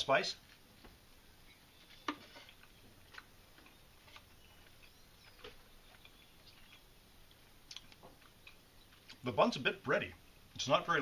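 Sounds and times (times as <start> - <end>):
person chewing: 2.4 - 9.2.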